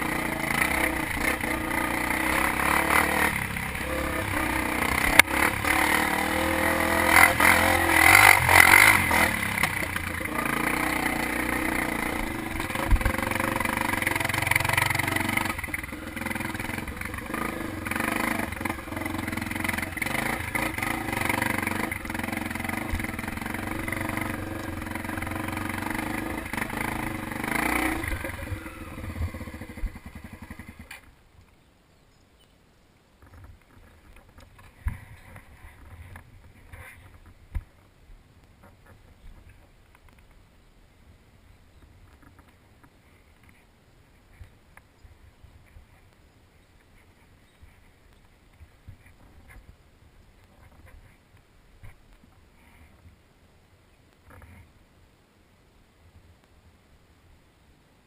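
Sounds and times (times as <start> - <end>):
dirt bike engine revving: 0.0 - 31.0.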